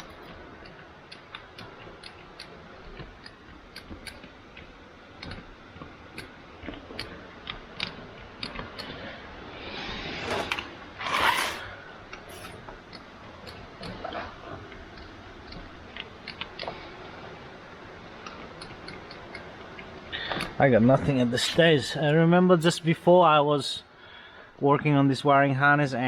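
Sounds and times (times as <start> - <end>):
rustling scrape: 9.0 - 12.6.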